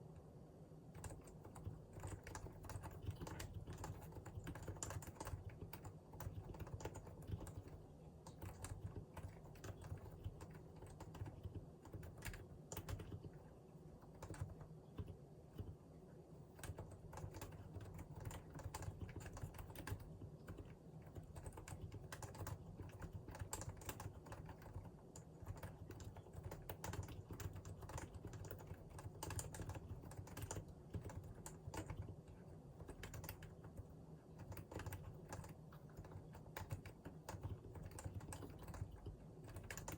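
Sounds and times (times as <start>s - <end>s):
keyboard typing: 1.0s - 15.8s, 16.4s - 39.9s.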